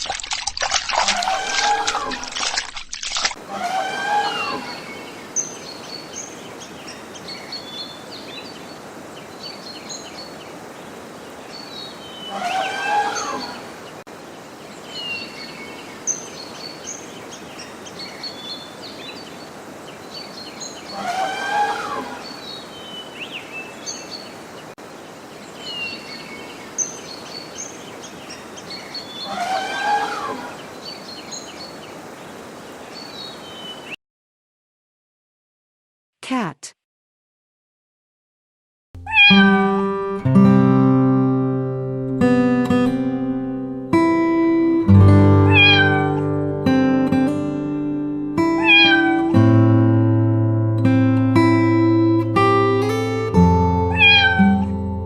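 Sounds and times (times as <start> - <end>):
elephant trumpeting: 1.0 - 2.3, 3.4 - 4.8, 12.4 - 13.6, 21.0 - 22.2, 29.3 - 30.6
steady outdoor hiss: 3.4 - 34.0, 39.4 - 55.0
small birds chirping: 4.6 - 21.1, 22.0 - 34.0.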